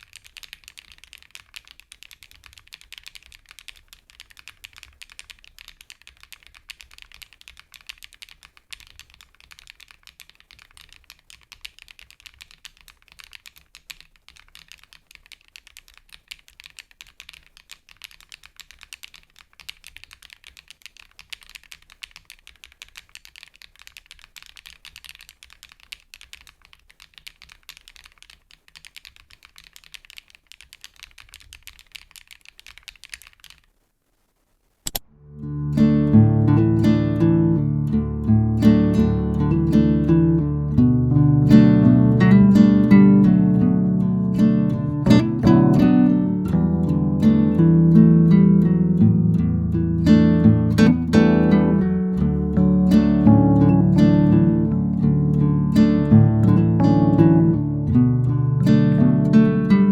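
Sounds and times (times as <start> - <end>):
fast typing on mechanical keyboard: 0.0 - 33.7.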